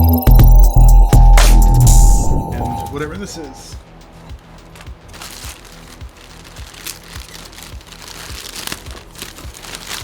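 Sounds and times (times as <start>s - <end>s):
background music with steady beat: 0.0s - 10.0s
packaging being torn open: 4.7s - 10.0s.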